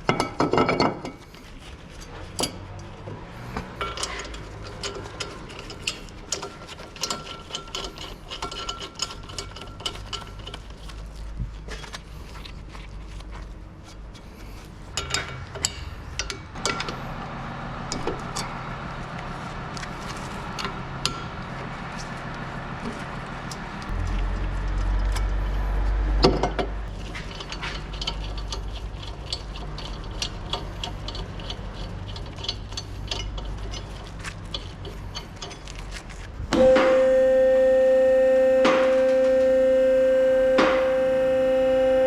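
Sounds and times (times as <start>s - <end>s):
low hum: 14.9s - 30.2s, 36.4s - 42.0s.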